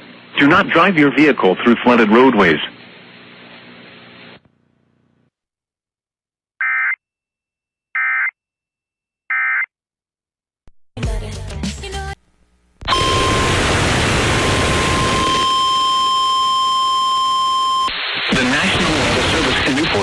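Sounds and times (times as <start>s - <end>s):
broadcast audio: 0.3s - 2.9s, 12.8s - 20.0s.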